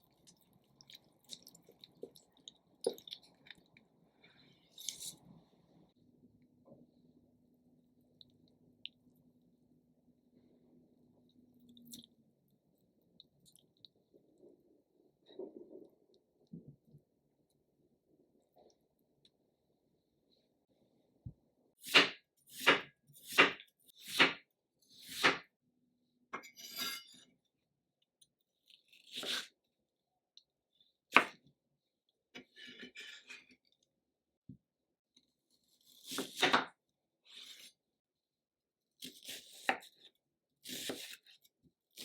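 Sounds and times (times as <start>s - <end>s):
knife chopping on cutting board: 21.8s - 24.5s, 25.1s - 25.5s, 36.0s - 36.7s, 40.6s - 41.2s.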